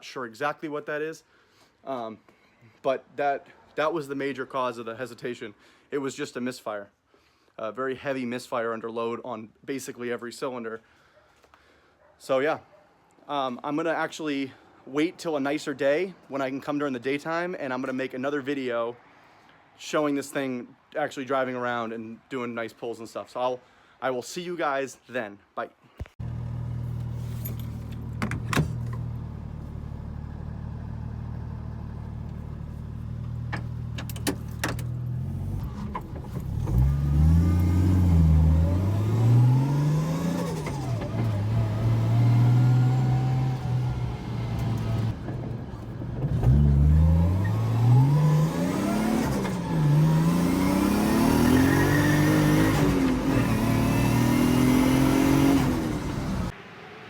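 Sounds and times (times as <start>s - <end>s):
car engine revving through gears: 33.0s - 45.2s, 46.2s - 56.5s.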